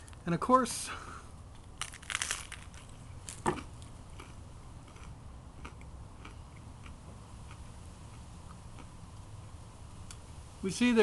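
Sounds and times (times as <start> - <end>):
person chewing food: 1.6 - 9.6
sharp crunches: 1.8 - 6.4.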